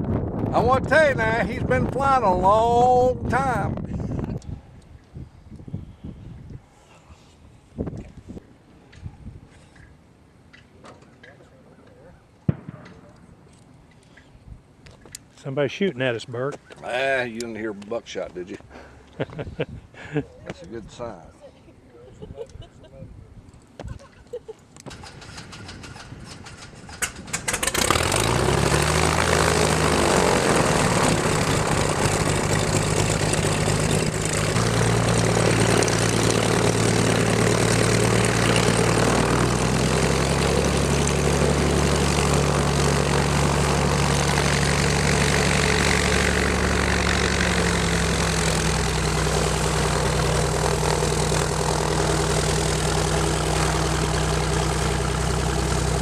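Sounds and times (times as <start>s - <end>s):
piston engine starting and idling: 24.9s - 56.0s.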